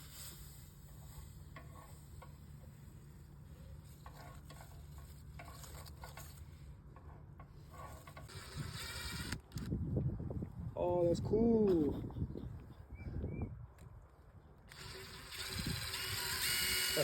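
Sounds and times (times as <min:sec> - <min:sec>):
steady low hum: 0:00.0 - 0:17.0
faint scraping and clicking: 0:00.2 - 0:09.7.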